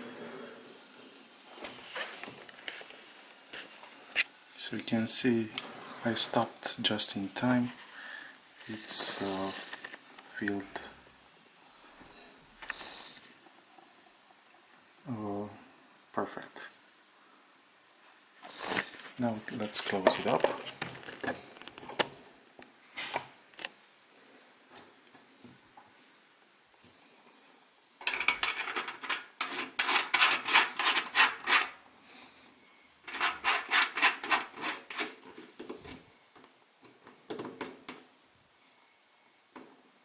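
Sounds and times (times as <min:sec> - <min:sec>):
metal cap scraping on threads: 0:28.0 - 0:31.8, 0:33.1 - 0:35.2.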